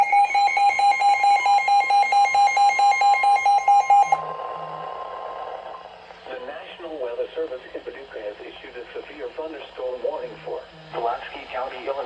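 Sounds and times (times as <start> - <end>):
shrill electronic beeping: 0.0 - 4.3
steady alarm tone: 0.0 - 5.5
radio hiss: 6.1 - 12.0.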